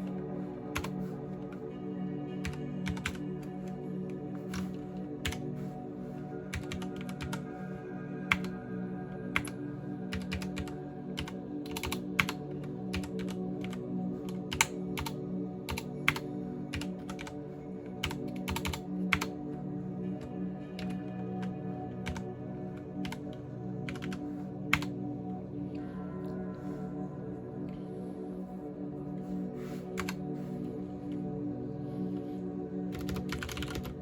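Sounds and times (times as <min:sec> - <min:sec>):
quiet background music: 0:00.0 - 0:34.0
mechanical keyboard typing: 0:02.4 - 0:03.3, 0:06.5 - 0:07.4, 0:08.3 - 0:08.5, 0:10.1 - 0:13.8, 0:14.5 - 0:15.1, 0:15.7 - 0:17.3, 0:18.0 - 0:19.3, 0:23.9 - 0:24.9, 0:32.9 - 0:34.0.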